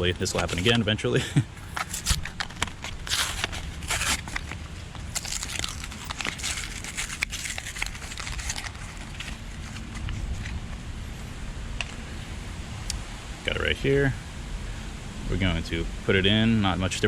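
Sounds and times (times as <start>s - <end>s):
packaging tearing: 0.0s - 0.8s, 1.6s - 10.2s
plastic packaging crinkling: 0.0s - 0.8s, 1.5s - 10.5s.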